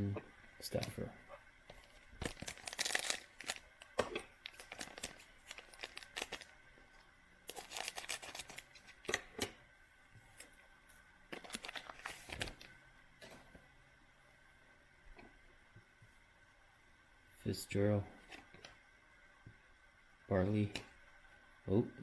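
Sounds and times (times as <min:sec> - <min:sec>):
cards and wrapper rustling: 0:01.7 - 0:06.5, 0:07.5 - 0:09.0, 0:11.4 - 0:12.7.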